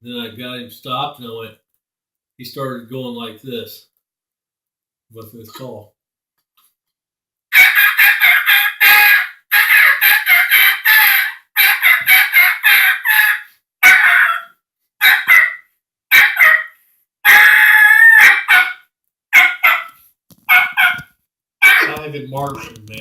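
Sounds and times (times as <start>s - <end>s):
imitated turkey call: 7.5s - 18.8s, 19.4s - 23.0s.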